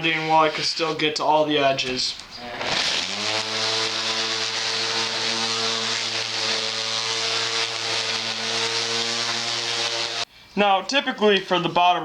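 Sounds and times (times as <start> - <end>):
electric sander running: 2.7 - 10.3.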